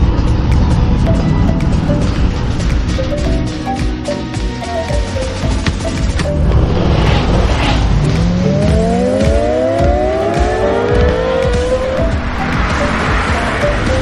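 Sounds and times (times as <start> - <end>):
background music: 0.0 - 14.0
car engine accelerating: 5.2 - 14.0.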